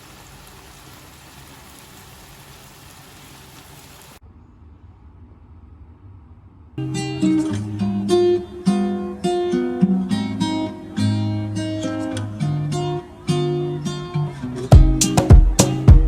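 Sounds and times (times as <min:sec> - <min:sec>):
acoustic guitar chords: 0:06.8 - 0:16.0.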